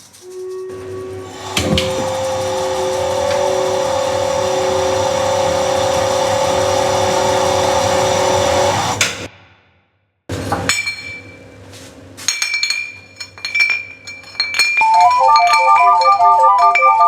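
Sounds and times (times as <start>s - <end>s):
glassy clinking strikes: 12.4s - 17.0s.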